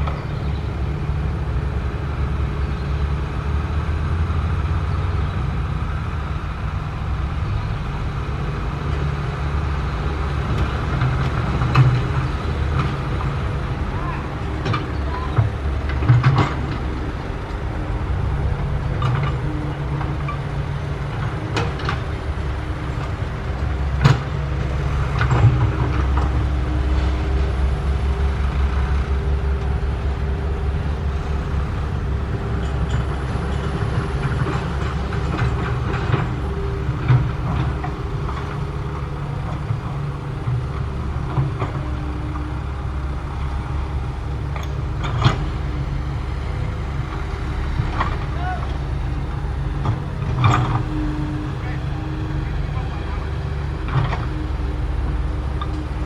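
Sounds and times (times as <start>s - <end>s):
excavator diesel engine: 0.0s - 56.0s.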